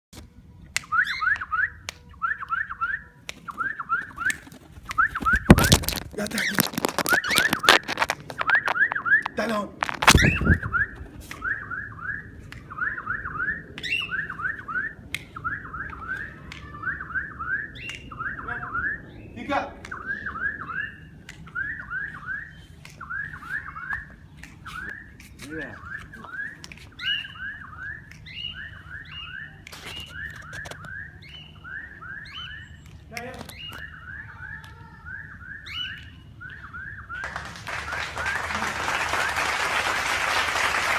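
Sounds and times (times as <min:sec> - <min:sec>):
pet bird chirping: 0:00.8 - 0:37.3
cockatiel chirping: 0:10.0 - 0:19.2.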